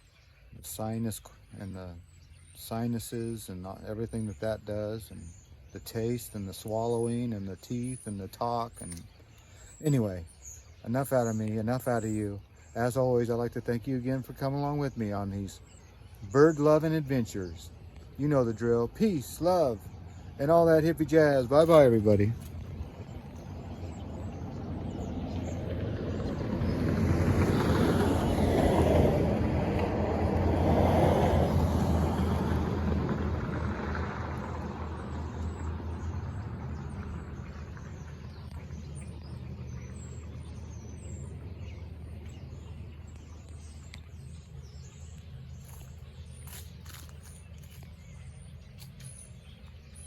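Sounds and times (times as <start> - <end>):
traffic hum: 0.0 - 50.0
vehicle passing: 19.4 - 48.7.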